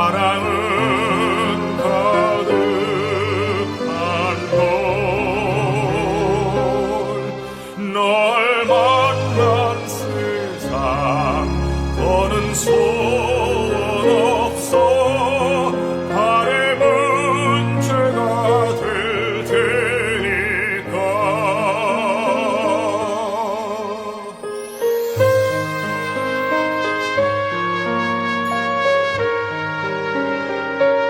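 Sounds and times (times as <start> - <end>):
operatic singing: 0.0 - 28.3
orchestral accompaniment: 0.0 - 31.0
slow music with vibrato melody: 0.0 - 31.0.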